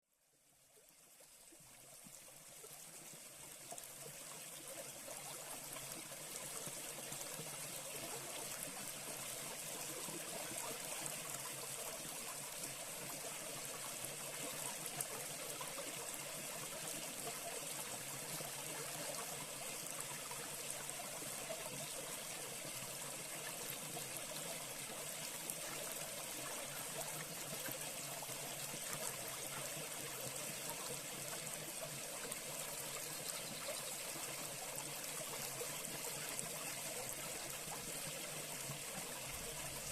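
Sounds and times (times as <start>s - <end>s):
brook flowing and trickling: 0.2s - 39.9s.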